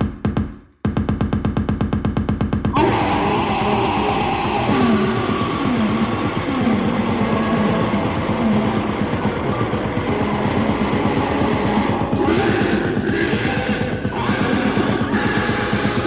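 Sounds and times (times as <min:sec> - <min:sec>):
fast low pulse: 0:00.9 - 0:16.0
distorted static noise: 0:02.8 - 0:16.0.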